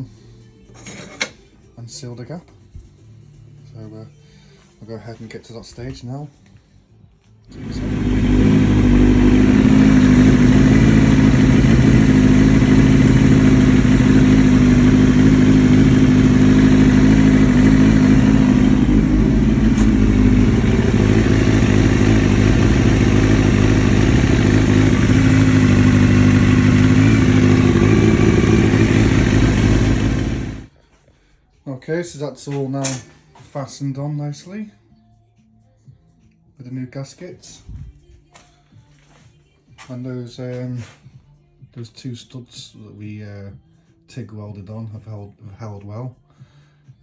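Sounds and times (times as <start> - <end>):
motorcycle engine idling: 7.5 - 30.7.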